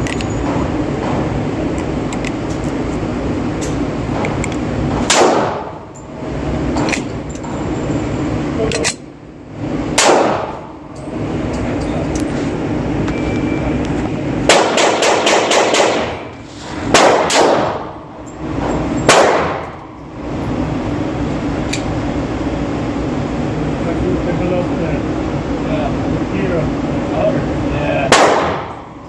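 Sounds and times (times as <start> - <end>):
pistol shots: 5.0 - 5.8, 9.9 - 10.7, 14.5 - 16.3, 16.9 - 17.9, 19.1 - 19.7, 28.1 - 28.8.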